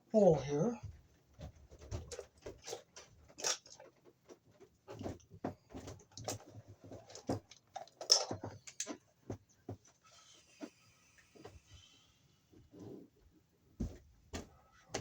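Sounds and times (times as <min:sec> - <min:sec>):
electrical wires clicking and scraping: 0:01.2 - 0:10.8.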